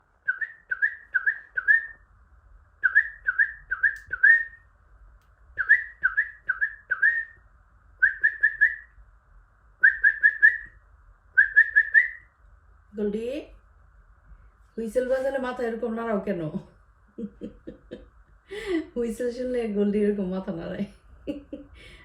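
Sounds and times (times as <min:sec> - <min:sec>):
person whistling: 0:00.3 - 0:02.0, 0:02.8 - 0:04.6, 0:05.6 - 0:07.4, 0:08.0 - 0:08.9, 0:09.8 - 0:10.8, 0:11.4 - 0:12.2.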